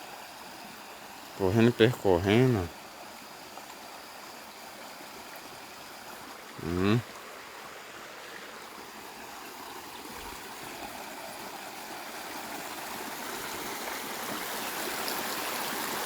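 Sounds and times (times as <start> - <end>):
water cascading: 1.4 - 2.8, 6.2 - 7.5.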